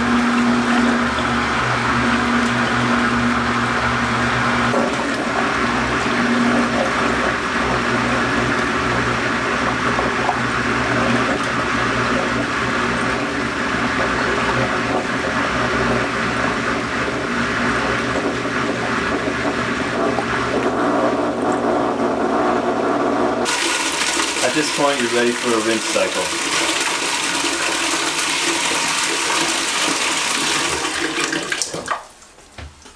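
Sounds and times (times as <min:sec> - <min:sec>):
low motor hum: 0:00.0 - 0:26.4
water rushing in washing machine: 0:00.0 - 0:32.9.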